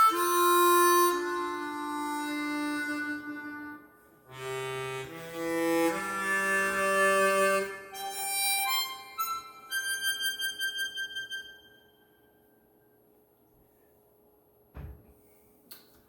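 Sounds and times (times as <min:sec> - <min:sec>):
chromatic harmonica playing: 0:00.0 - 0:12.4.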